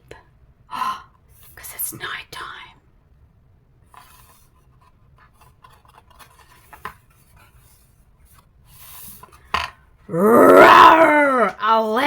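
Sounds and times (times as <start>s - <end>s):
book pages scratching: 3.9s - 9.4s.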